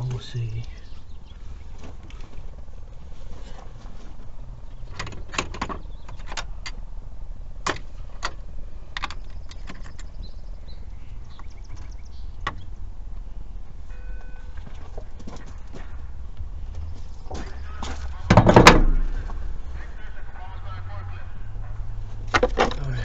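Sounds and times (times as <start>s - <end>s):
steady low rumble: 14.5s - 23.0s.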